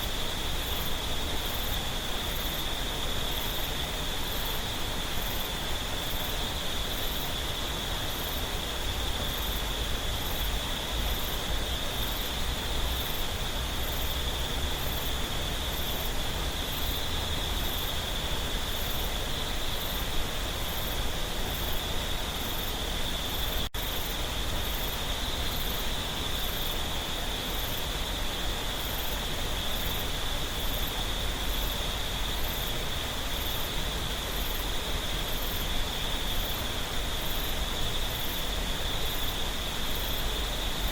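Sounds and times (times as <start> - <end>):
high insect trill: 0.0 - 40.9.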